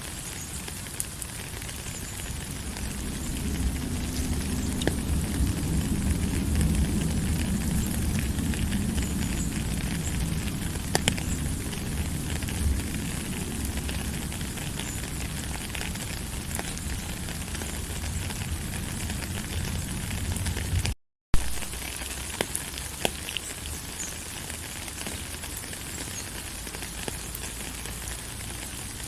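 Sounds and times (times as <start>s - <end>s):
crackles and clicks: 0.0s - 29.0s
low rushing noise: 1.7s - 21.7s.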